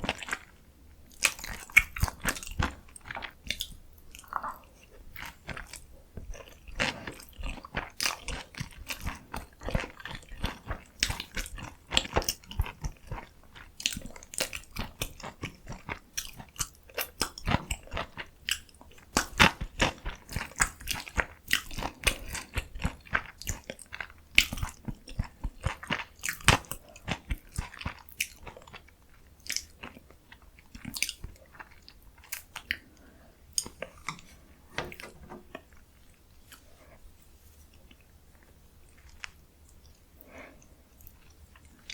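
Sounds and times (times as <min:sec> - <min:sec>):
person chewing and crunching food: 0:00.0 - 0:35.8, 0:37.7 - 0:41.9.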